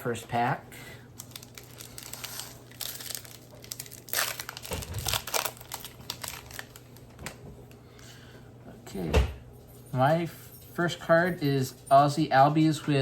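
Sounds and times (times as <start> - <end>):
faint steady hum: 0.0 - 13.0
wrapper tearing and crinkling: 1.2 - 7.4.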